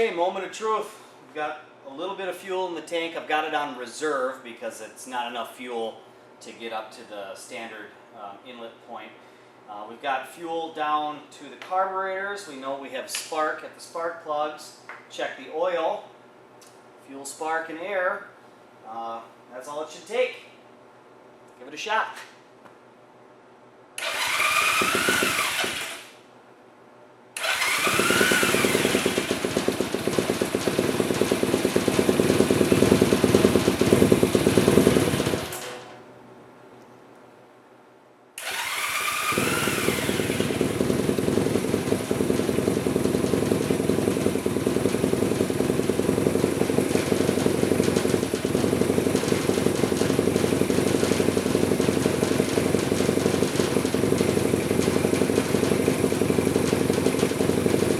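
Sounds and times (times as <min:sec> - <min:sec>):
motorcycle engine running: 0:24.0 - 0:26.0, 0:27.4 - 0:35.7, 0:38.4 - 0:57.9
electric starter cranking: 0:24.0 - 0:26.2, 0:27.4 - 0:36.0, 0:38.4 - 0:57.9.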